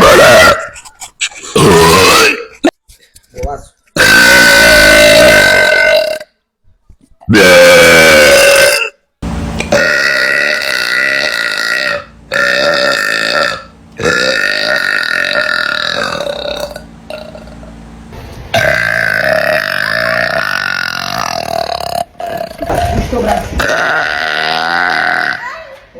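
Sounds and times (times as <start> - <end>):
girl belching loudly: 0.0 - 0.8, 1.5 - 2.5, 4.0 - 6.3, 7.3 - 9.0, 9.7 - 17.6, 18.5 - 23.0, 23.6 - 25.7.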